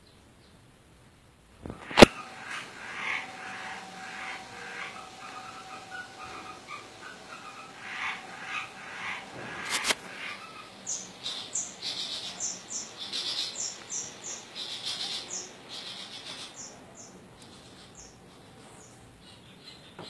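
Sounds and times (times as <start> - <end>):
bird singing high sharp notes: 1.8 - 14.4.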